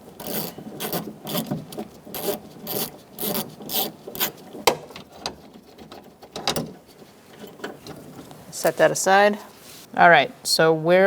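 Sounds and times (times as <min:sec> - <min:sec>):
ratchet wrench strokes: 0:00.2 - 0:01.5, 0:02.2 - 0:04.4.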